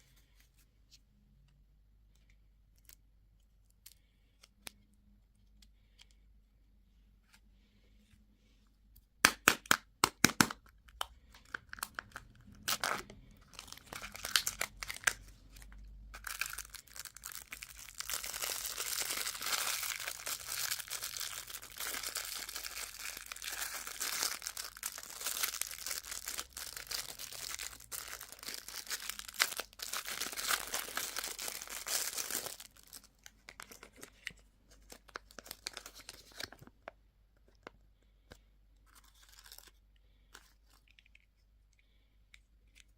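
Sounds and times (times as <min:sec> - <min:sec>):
plastic wrapper crinkling: 0:11.0 - 0:37.8.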